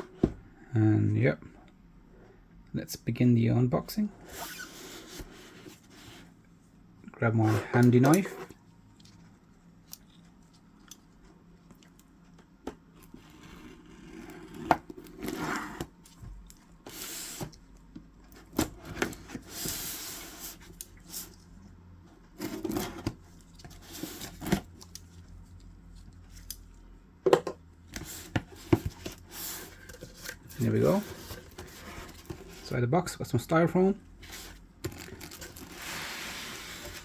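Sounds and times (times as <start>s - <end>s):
cardboard scraping: 13.1s - 15.9s, 22.4s - 24.7s, 28.0s - 32.8s, 34.2s - 37.0s.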